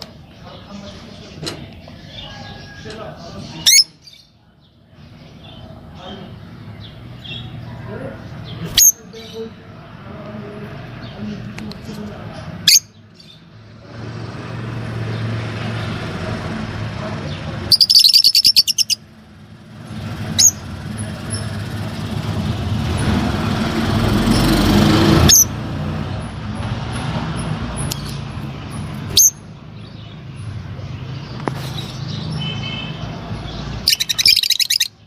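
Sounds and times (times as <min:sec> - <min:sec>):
lovebird chirping shrilly: 0:08.7 - 0:09.0, 0:17.7 - 0:19.0, 0:29.1 - 0:29.4, 0:33.8 - 0:35.0.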